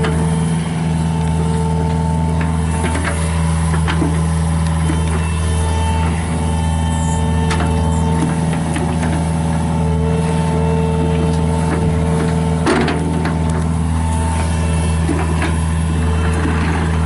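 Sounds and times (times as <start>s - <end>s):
diesel engine running: 0.0s - 17.0s.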